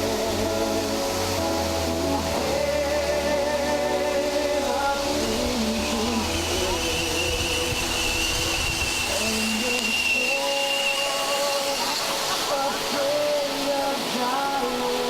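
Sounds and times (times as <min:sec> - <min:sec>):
music: 0:00.0 - 0:15.0
whistling firework: 0:04.8 - 0:13.3.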